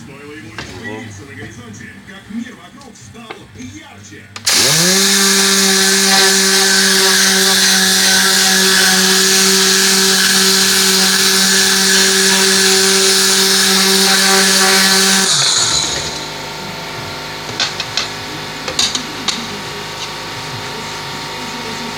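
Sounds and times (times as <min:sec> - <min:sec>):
air hissing: 0:04.4 - 0:16.5
electric motor humming: 0:04.4 - 0:21.9.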